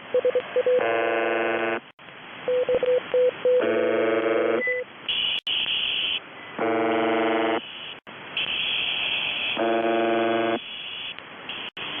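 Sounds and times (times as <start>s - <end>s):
harsh radio buzz tones: 3.7s - 11.7s
high-pitched radio hiss: 6.9s - 12.0s.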